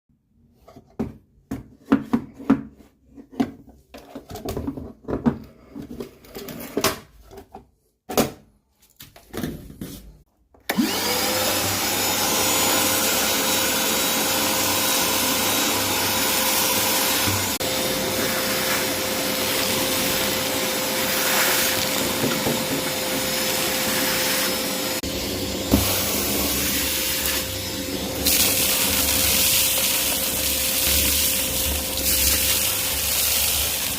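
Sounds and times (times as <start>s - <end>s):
vacuum cleaner running: 10.7s - 33.9s.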